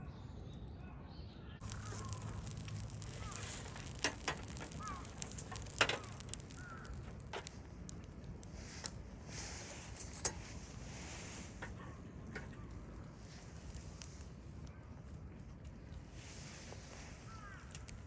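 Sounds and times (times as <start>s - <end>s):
sharp pops of fire: 1.6s - 10.4s
soft hiss: 1.6s - 11.6s
campfire crackling: 1.6s - 18.0s.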